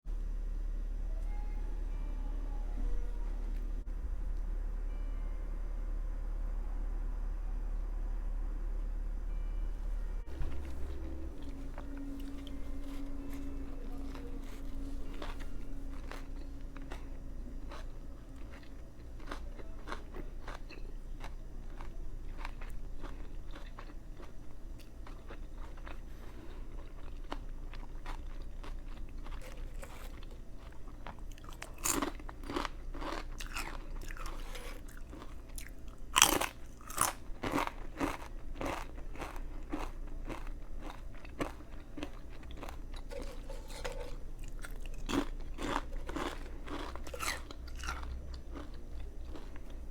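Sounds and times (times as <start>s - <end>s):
crunchy bites: 31.4s - 49.7s.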